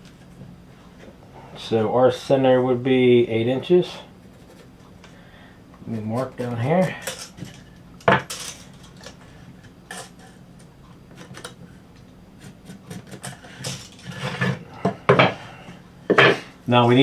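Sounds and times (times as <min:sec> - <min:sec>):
faint steady hum: 0:00.0 - 0:17.0
tools and wood clicking on workbench: 0:09.9 - 0:11.6.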